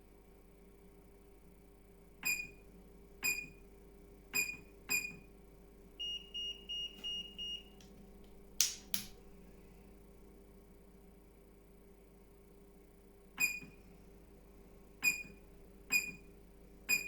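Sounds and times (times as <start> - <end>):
sharp clicks: 7.8 - 9.2.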